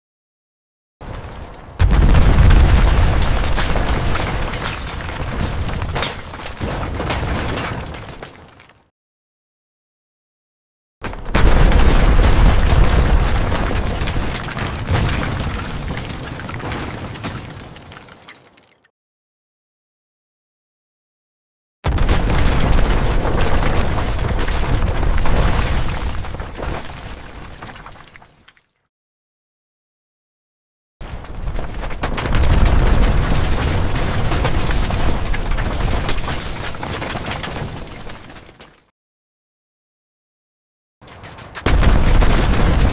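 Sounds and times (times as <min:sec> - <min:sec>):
building collapse rumble: 0:01.0 - 0:08.2, 0:11.3 - 0:17.7, 0:21.9 - 0:27.6, 0:31.0 - 0:38.2, 0:41.6 - 0:42.9
crashing crackling debris: 0:01.0 - 0:08.9, 0:11.0 - 0:18.8, 0:21.9 - 0:28.6, 0:31.0 - 0:38.9, 0:41.0 - 0:42.9
deep rumbling explosion: 0:01.8 - 0:04.1.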